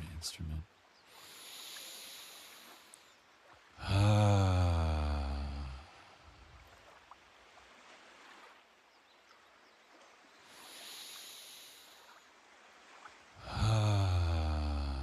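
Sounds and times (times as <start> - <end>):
man breathing in: 1.1 - 2.8, 10.6 - 12.0, 13.4 - 15.0
man's low voiced sigh: 3.8 - 6.2, 13.4 - 15.0.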